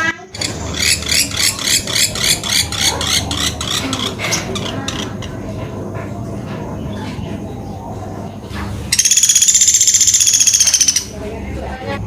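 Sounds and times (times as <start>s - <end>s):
woodpecker calling sharp high notes: 9.0s - 11.1s.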